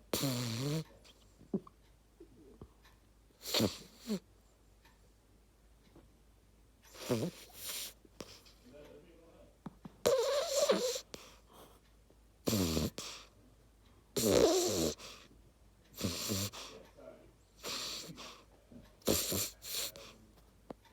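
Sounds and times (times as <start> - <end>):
puppy snoring: 0.0 - 1.7, 3.3 - 4.3, 6.9 - 8.6, 10.0 - 11.8, 12.4 - 13.4, 14.1 - 15.3, 15.9 - 16.9, 17.6 - 20.2.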